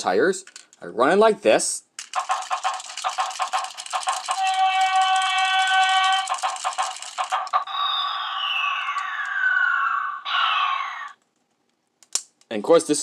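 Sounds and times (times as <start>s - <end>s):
plastic clicking rattle: 0.4s - 0.8s, 2.0s - 7.6s.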